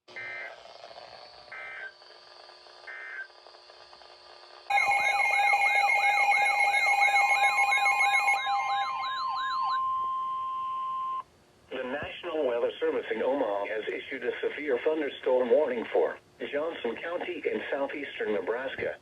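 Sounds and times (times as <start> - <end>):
steady alert tone: 4.7 - 11.2
sweeping alert chirp: 4.7 - 11.2
warbling data bursts: 4.7 - 11.2.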